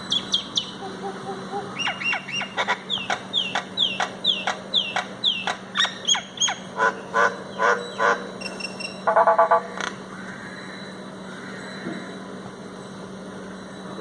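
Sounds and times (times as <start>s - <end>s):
myna whistling calls: 0.0s - 9.0s.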